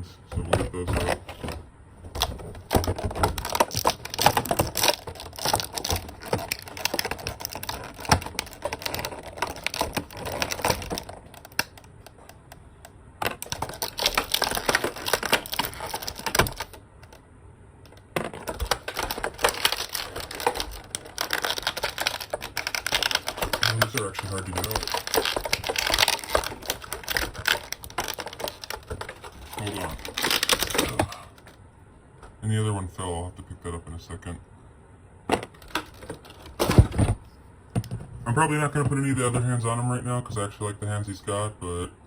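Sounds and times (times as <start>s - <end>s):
plastic packaging clicking and crackling: 0.4s - 12.6s, 13.2s - 17.2s, 17.8s - 31.6s, 35.3s - 37.2s.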